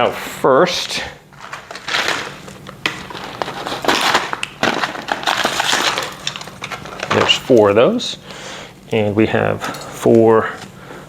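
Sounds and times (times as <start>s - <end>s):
plastic packaging crinkling: 1.3s - 7.6s.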